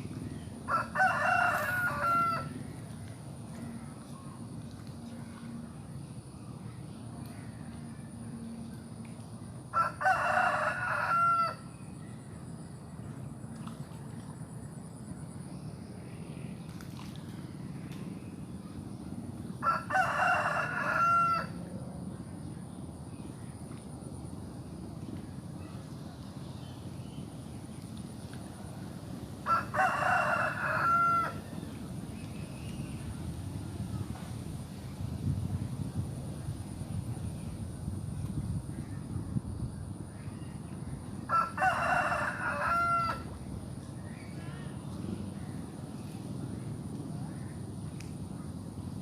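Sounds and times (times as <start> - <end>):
low background noise: 0.0 - 49.0
rooster crowing: 0.7 - 2.6, 9.7 - 11.6, 19.6 - 21.6, 29.4 - 31.5, 41.3 - 43.3
low outdoor background hiss: 5.2 - 38.0.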